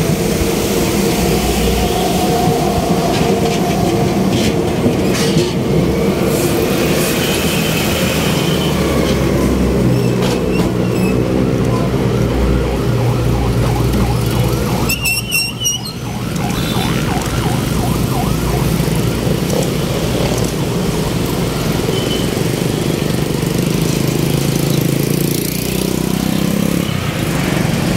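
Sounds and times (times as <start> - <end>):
road traffic engines: 0.0 - 27.9
warbling electronic warning tone: 12.5 - 18.3.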